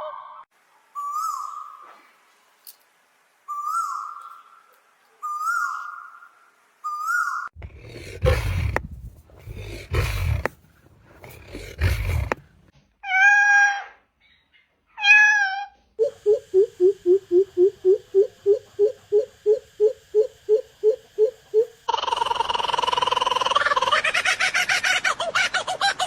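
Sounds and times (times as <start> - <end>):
wavering mewing bird calls: 5.2 - 12.5, 16.0 - 24.3
deep hooting bird notes: 16.0 - 23.3.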